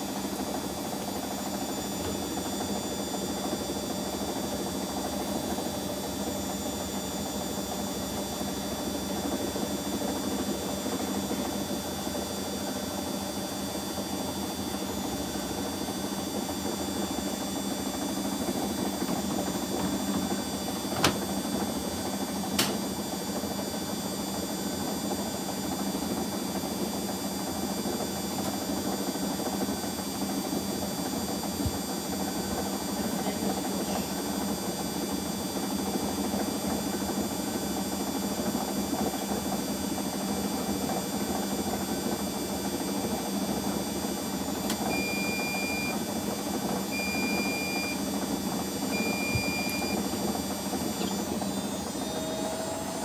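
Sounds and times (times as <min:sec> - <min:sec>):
washing machines humming: 0:00.0 - 0:53.0
short electronic beeps: 0:45.0 - 0:45.9, 0:47.0 - 0:48.0, 0:49.0 - 0:50.0.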